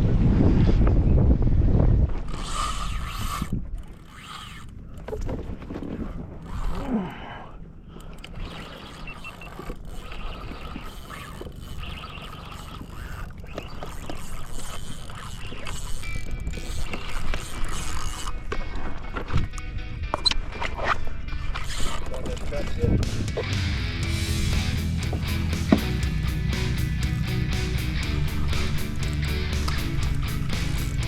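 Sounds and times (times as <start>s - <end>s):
wind buffeting microphone: 0.0s - 3.8s, 22.7s - 23.5s
small mechanical clicks and scrapes: 2.2s - 5.4s, 6.4s - 6.9s, 8.0s - 18.4s.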